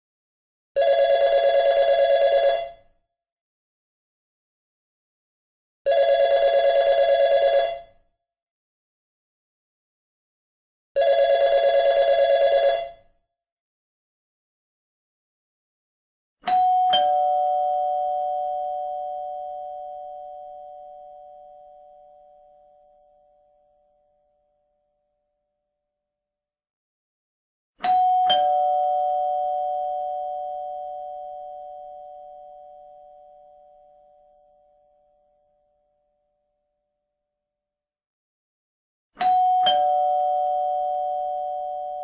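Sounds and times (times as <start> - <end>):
two-tone doorbell chime: 16.5 - 21.7, 27.8 - 33.3, 39.2 - 42.0.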